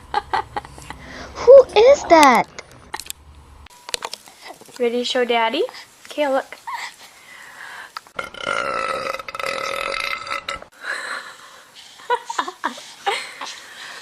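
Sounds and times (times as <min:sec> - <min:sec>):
person belching: 0:08.2 - 0:10.7.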